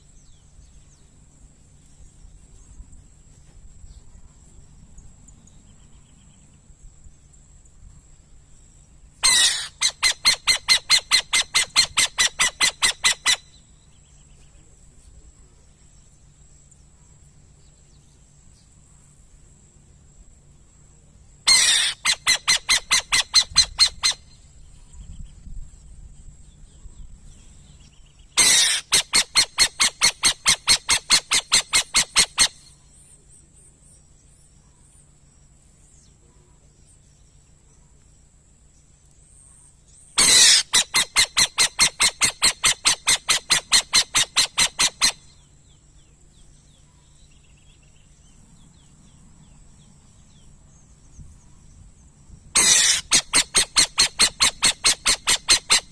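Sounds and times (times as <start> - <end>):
owl chattering calls: 9.2 - 13.7, 21.4 - 24.4, 28.4 - 32.8, 40.2 - 45.5, 52.5 - 55.9.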